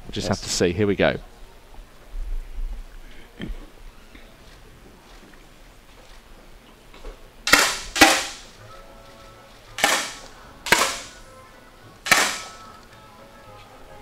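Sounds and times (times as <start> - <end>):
air rifle shots: 7.5 - 8.6, 9.8 - 11.2, 12.0 - 12.6.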